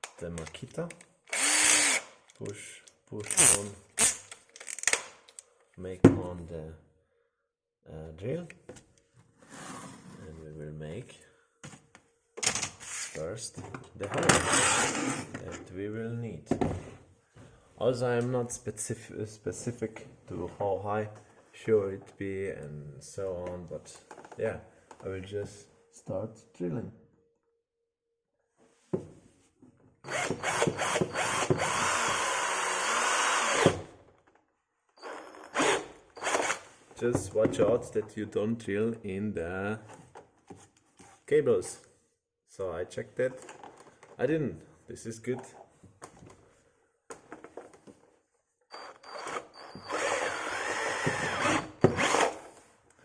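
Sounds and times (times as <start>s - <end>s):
power drill boring: 1.3s - 2.1s, 14.4s - 15.2s, 30.1s - 33.8s, 35.0s - 36.7s, 48.7s - 52.5s.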